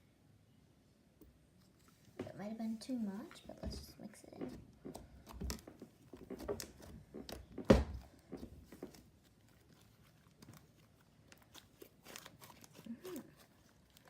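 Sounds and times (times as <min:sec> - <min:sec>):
slime squishing: 0:04.3 - 0:14.0
slime popping: 0:06.3 - 0:14.0.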